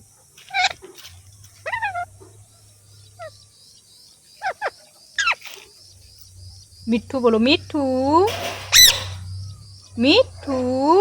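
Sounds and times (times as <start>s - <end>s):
parrot calling: 1.5s - 3.4s, 4.4s - 5.5s, 6.6s - 11.0s.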